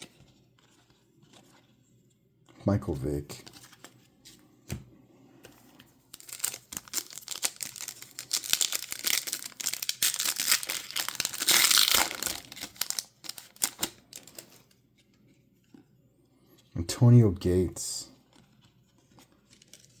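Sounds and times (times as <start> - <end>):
foil wrapper crinkling and tearing: 6.1 - 14.6.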